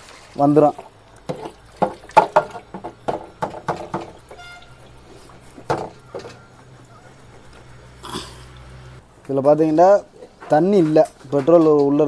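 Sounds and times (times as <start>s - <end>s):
knocks and clunks of containers: 0.0s - 9.0s.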